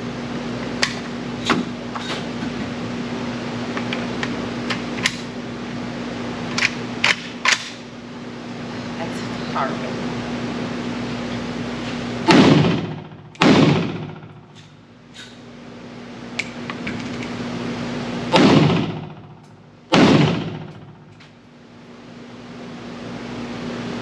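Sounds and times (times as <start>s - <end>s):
steady hum: 0.0s - 24.0s
pistol gunshots with echo: 12.2s - 14.4s, 18.3s - 19.3s, 19.9s - 21.0s.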